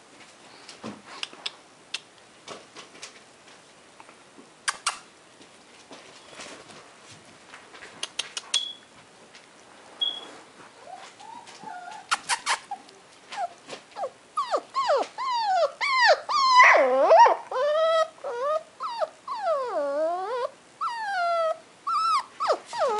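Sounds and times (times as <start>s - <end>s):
puppy whining and whimpering: 10.0s - 22.9s.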